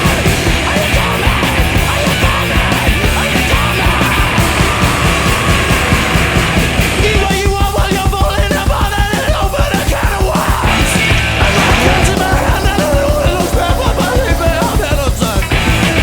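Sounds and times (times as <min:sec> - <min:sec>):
heavy rock music: 0:00.0 - 0:16.0
person singing: 0:07.0 - 0:15.8.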